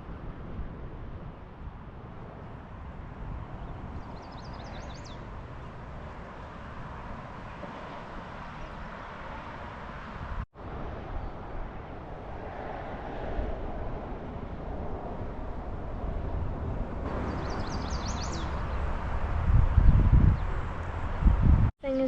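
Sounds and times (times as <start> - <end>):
bird high chirps: 4.1 - 5.2, 17.3 - 18.8.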